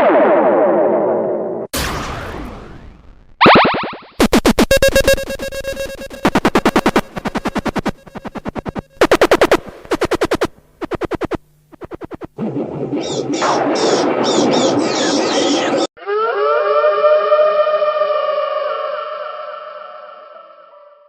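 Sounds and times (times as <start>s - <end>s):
falling electronic sweep: 1.8s - 15.9s
stuttering synth bursts: 3.4s - 12.4s.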